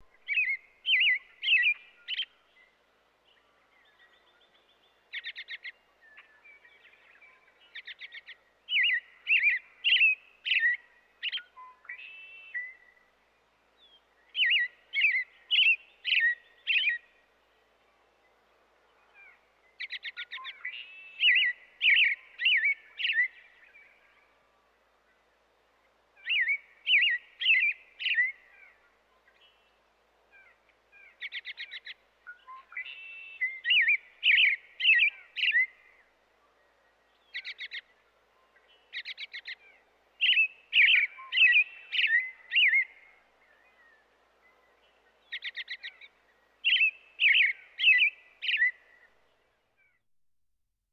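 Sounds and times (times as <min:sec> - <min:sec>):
goldfinch chirping: 0:31.2 - 0:35.7, 0:40.2 - 0:42.9, 0:45.2 - 0:48.8.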